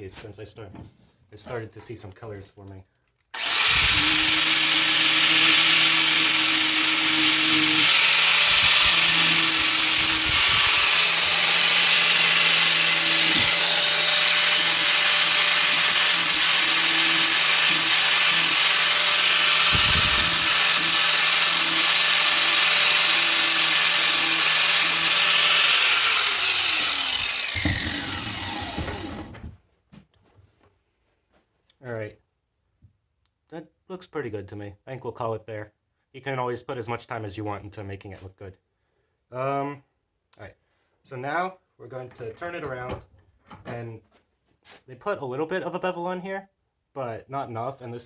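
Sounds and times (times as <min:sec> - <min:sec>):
angle grinder grinding steel: 0:03.4 - 0:29.4
grinder spinning down: 0:03.4 - 0:29.4.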